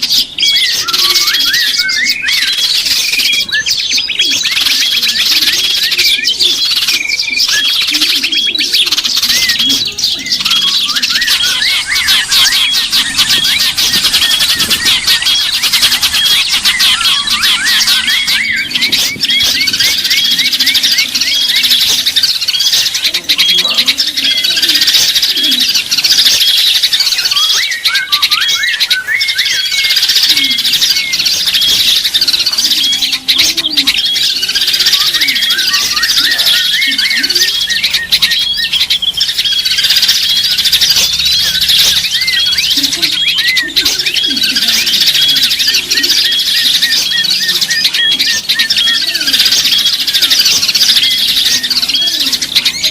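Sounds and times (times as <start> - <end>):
lower bird calls: 0.0 - 52.9
songbirds chirping chorus: 0.0 - 52.9.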